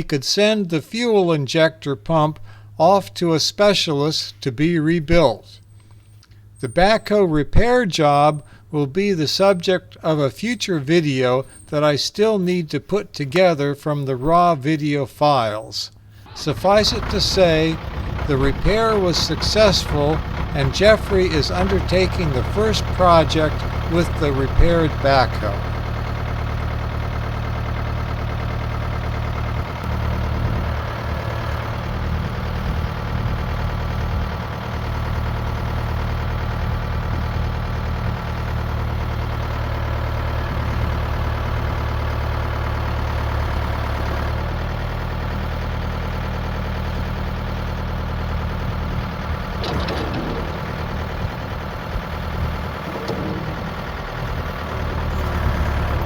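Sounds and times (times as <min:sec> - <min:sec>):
diesel backhoe engine running: 0:05.6 - 0:07.1, 0:08.3 - 0:08.7, 0:16.0 - 0:56.0.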